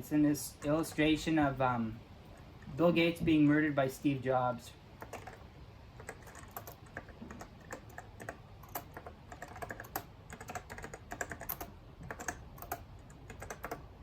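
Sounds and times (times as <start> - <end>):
keyboard keystrokes clicking: 5.0 - 5.4, 6.0 - 13.9.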